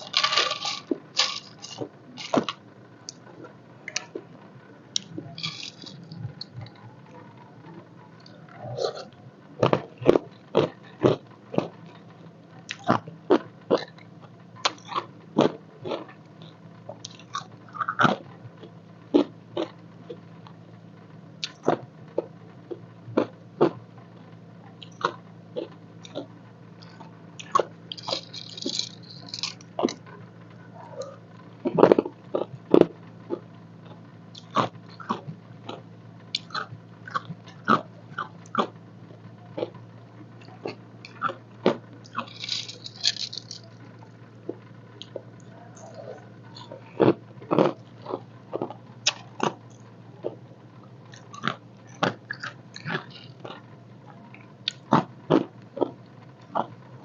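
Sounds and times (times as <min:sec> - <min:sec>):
ice cubes crunched by teeth: 0:00.0 - 0:02.6, 0:26.8 - 0:29.6, 0:42.1 - 0:43.6
steady low hum: 0:00.0 - 0:57.0.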